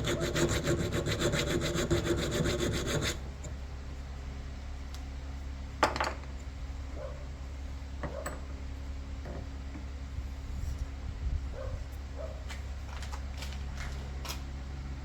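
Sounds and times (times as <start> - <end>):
steady low hum: 0.0 - 8.0.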